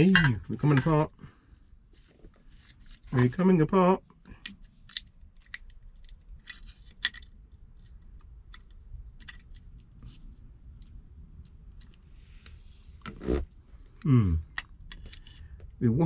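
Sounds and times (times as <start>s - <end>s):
metallic clicks and scrapes: 1.9s - 3.3s, 4.4s - 14.0s.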